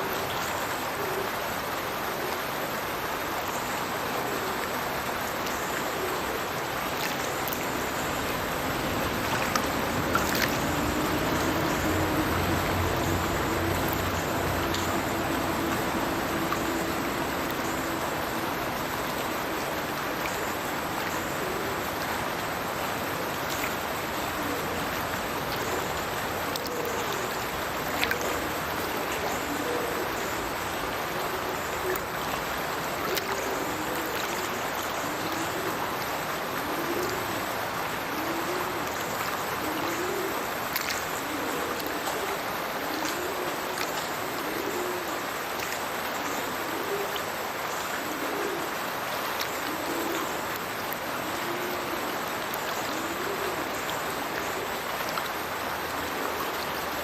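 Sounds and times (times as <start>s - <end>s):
rushing falling water: 0.0s - 57.0s.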